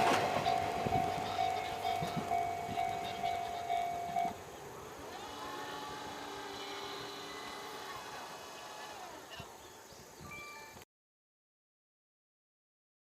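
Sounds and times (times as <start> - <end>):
short high tones: 0.1 - 4.4
electric motor whine: 5.0 - 9.4.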